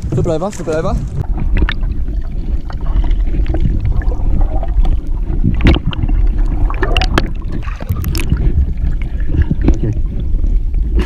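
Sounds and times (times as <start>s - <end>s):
low rumble on microphone: 0.0s - 11.0s
water splashing and sloshing: 0.0s - 11.0s
sharp splashes or knocks: 1.2s - 8.6s.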